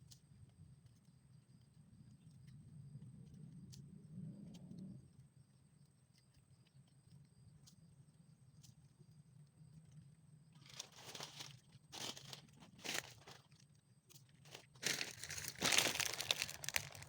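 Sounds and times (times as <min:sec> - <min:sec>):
material rustling and crinkling: 0:14.5 - 0:17.0.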